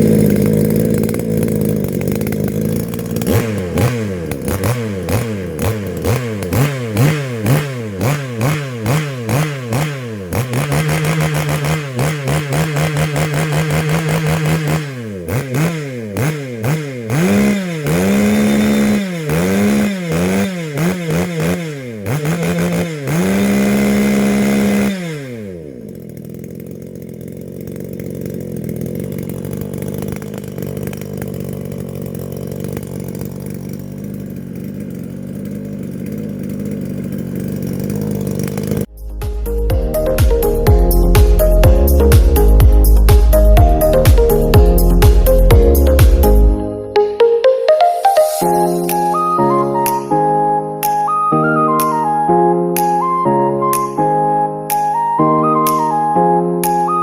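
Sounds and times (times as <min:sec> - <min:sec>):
chainsaw engine revving and idling: 0:00.0 - 0:47.3, 0:48.0 - 0:54.1, 0:54.7 - 0:57.0.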